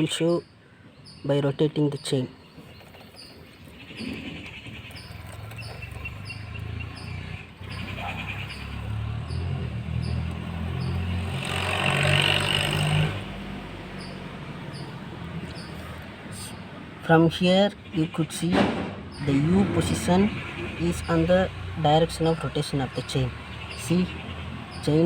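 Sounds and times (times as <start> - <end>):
motorcycle engine running: 4.0 - 16.1.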